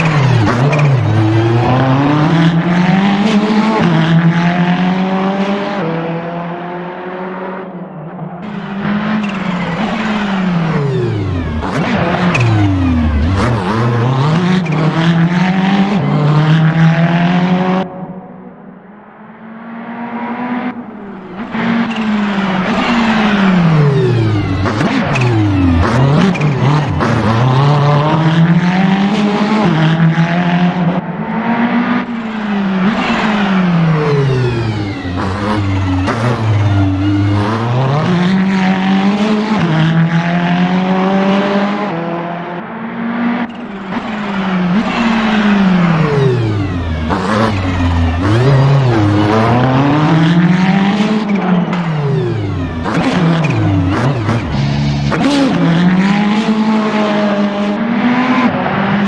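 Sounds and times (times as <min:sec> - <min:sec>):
racing car engine revving: 0:00.0 - 0:59.0.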